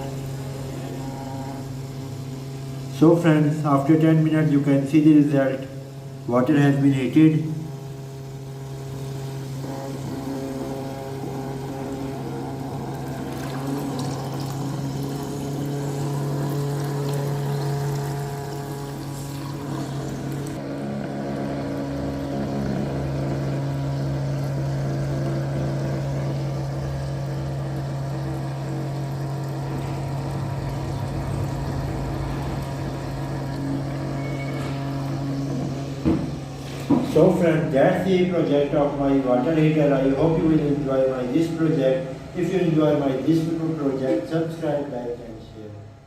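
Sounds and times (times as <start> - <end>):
water pump humming: 0.0 - 46.0.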